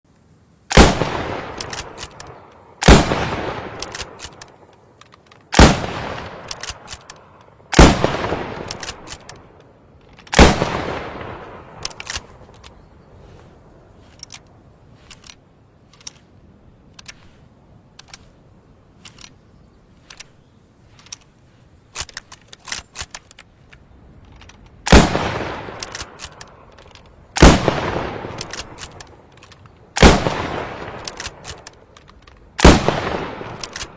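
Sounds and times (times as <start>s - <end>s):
rifle shots: 0.7s - 4.7s, 5.5s - 9.5s, 10.3s - 12.7s, 24.8s - 26.7s, 27.3s - 29.3s, 29.9s - 31.8s, 32.6s - 33.9s
rifle bolt clicks: 0.7s - 10.8s, 11.4s - 12.9s, 14.0s - 33.9s
metallic clicks and rattles: 1.5s - 3.0s, 3.7s - 5.6s, 6.3s - 7.8s, 8.6s - 10.4s, 11.8s - 12.8s, 14.0s - 25.0s, 25.7s - 27.5s, 28.2s - 30.1s, 30.8s - 32.7s, 33.4s - 33.9s.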